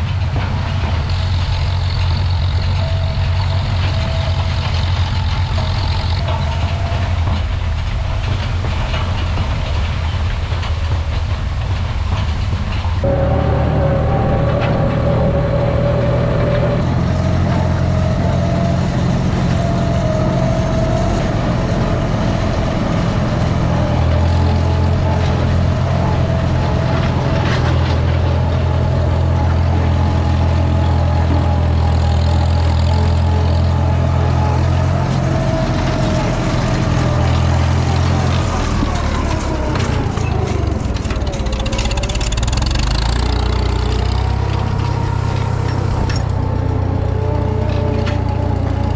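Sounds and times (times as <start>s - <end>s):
tractor engine running: 0.0s - 48.9s
steady whine: 13.0s - 48.9s.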